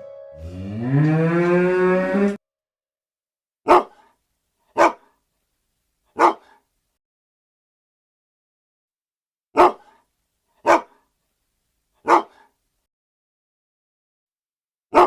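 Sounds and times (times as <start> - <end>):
cow mooing: 0.4 - 2.4
dog barking: 3.7 - 5.2, 6.1 - 6.6, 9.6 - 10.0, 10.6 - 11.1, 12.0 - 12.6.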